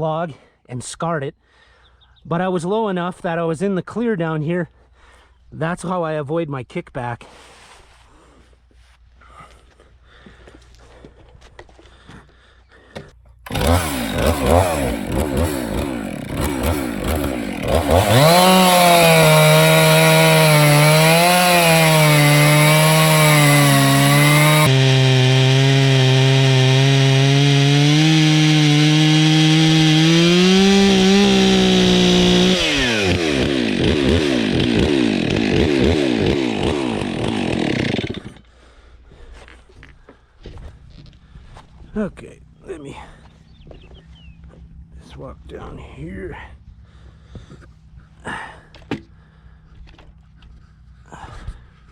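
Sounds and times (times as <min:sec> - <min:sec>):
chainsaw cutting log: 0:13.5 - 0:38.5
chainsaw idling: 0:13.5 - 0:38.5.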